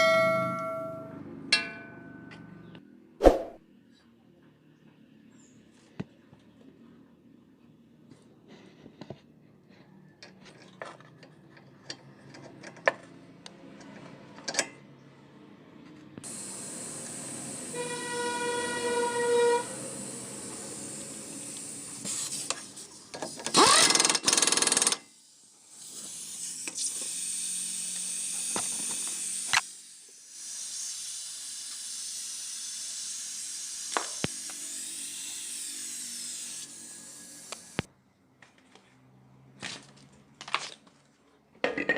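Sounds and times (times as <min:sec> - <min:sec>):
power tool hissing: 0:16.2 - 0:37.9.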